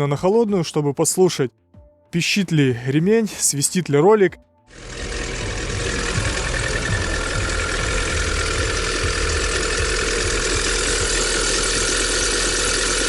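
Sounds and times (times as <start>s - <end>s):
car engine idling with knocking: 4.7s - 13.0s.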